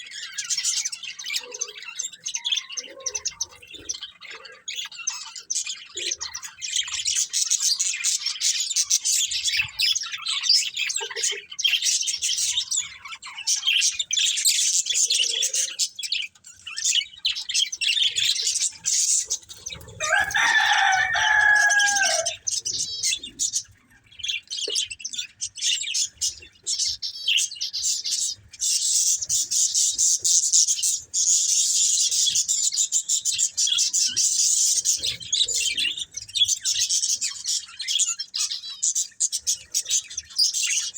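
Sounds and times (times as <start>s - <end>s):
budgerigars chattering: 0.0s - 40.9s
drawn-out falling bird call: 19.9s - 22.6s.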